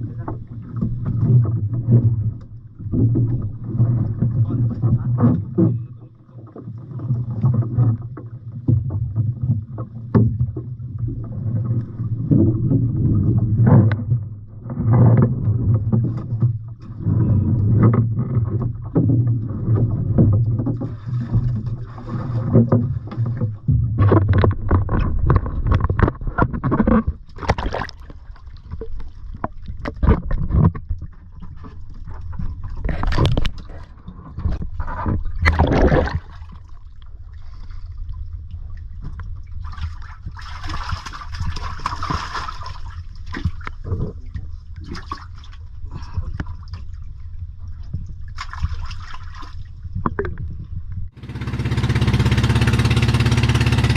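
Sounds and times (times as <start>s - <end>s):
water splashing: 0.0s - 53.9s
knocks against hull: 0.1s - 5.9s, 7.1s - 10.8s, 12.1s - 28.1s, 28.7s - 36.6s
boat engine humming: 51.1s - 53.9s.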